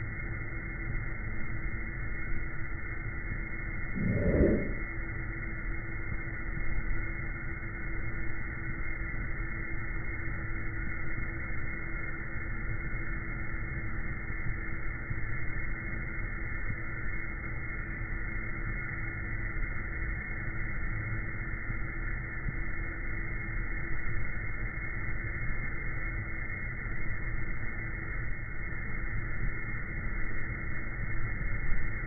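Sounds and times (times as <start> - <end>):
constant hum: 0.0 - 32.0.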